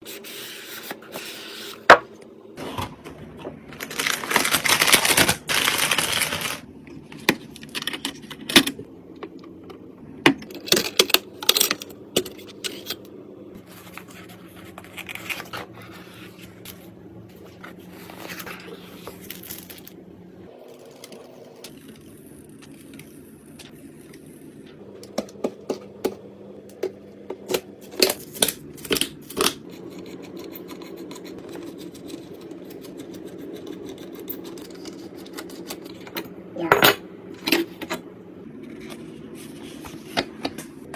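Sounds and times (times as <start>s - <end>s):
packaging rustling and tearing: 3.7s - 6.7s, 13.6s - 16.8s.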